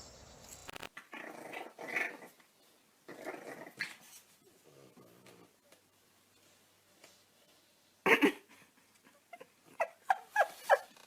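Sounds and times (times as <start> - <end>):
puppy growling: 1.1 - 2.4, 3.1 - 5.6.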